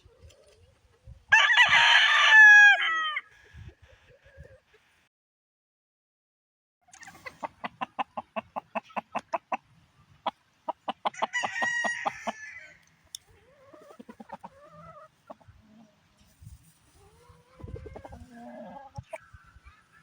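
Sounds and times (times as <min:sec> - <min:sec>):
chickens clucking: 0:00.0 - 0:01.3, 0:06.8 - 0:20.0
rooster crowing: 0:01.3 - 0:03.2, 0:11.1 - 0:12.8.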